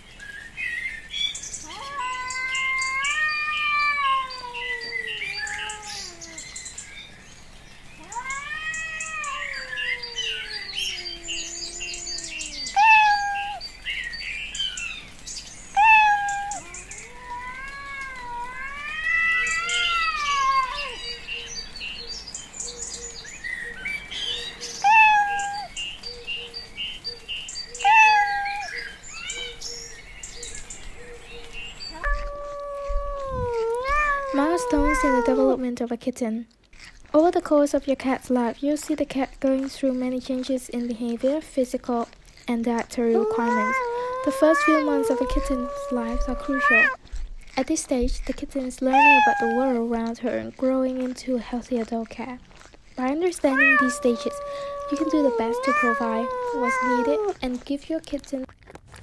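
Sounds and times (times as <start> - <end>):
small birds chirping: 0.0 - 59.0
cat meowing: 1.6 - 6.4, 8.0 - 13.6, 15.8 - 21.1, 24.8 - 25.7, 27.8 - 28.8, 31.9 - 35.6, 43.1 - 47.0, 48.8 - 49.9, 53.5 - 57.4.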